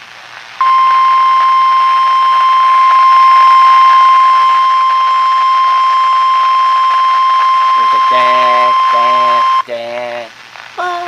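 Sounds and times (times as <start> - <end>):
steady alarm tone from radio speaker: 0.6 - 9.6.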